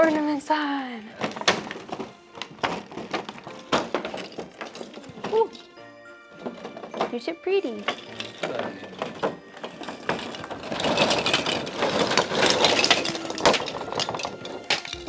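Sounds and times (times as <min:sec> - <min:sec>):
ornaments clicking and knocking: 0:00.0 - 0:15.0
packaging rustling and rattling: 0:00.0 - 0:15.0.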